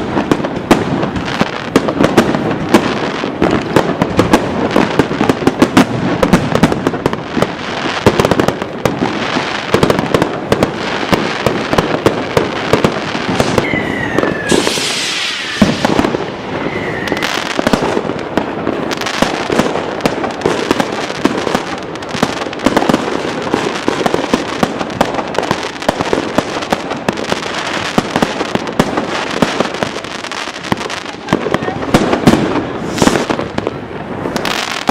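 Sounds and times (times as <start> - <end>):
fireworks barrage: 0.0 - 34.9
falling firework whistle: 13.3 - 18.0, 32.6 - 33.7.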